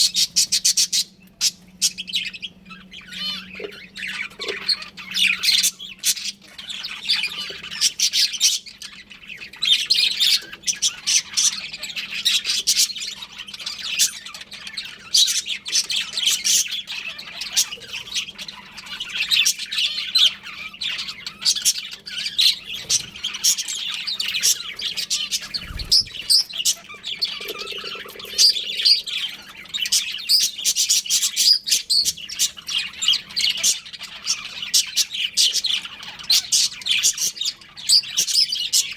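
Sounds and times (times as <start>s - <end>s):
budgerigars chirping and squawking: 0.0s - 38.9s.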